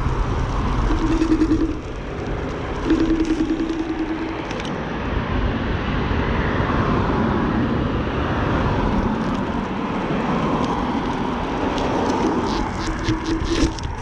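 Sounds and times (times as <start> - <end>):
road noise on wet road: 0.0 - 1.0, 1.8 - 3.0, 4.5 - 14.0
rushing wind: 0.0 - 14.0
faint wavering whine: 0.8 - 2.0, 2.8 - 4.7.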